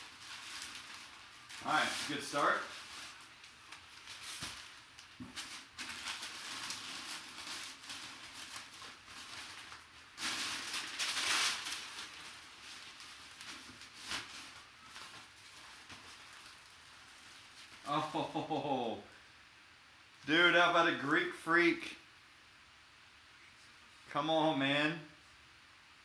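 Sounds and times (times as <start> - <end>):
packaging rustling and crinkling: 0.0 - 18.1.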